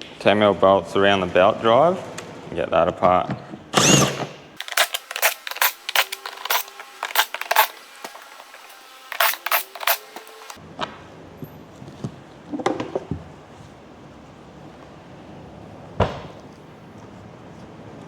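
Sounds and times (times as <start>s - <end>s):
ratchet wrench clicking: 3.8s - 10.6s.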